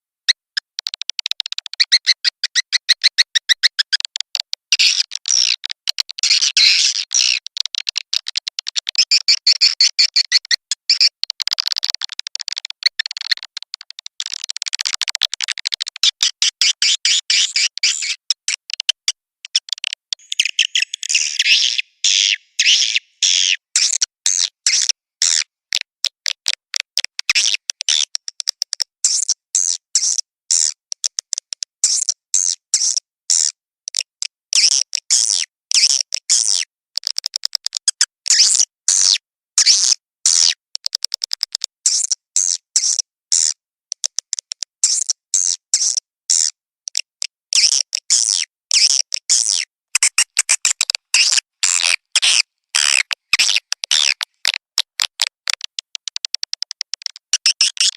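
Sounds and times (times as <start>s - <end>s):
swiftlet chirping twitters: 20.2s - 23.6s.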